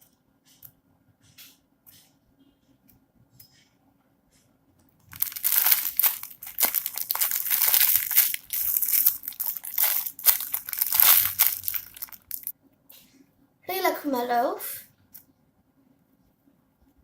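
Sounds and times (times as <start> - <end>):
plastic wrapping crinkling: 5.1 - 12.5.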